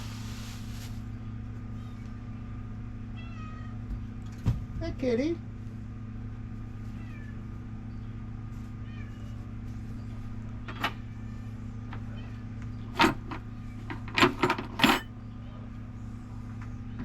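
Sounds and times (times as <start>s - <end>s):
cat meowing: 3.1s - 3.8s, 6.8s - 7.5s, 8.8s - 9.4s, 11.0s - 12.5s.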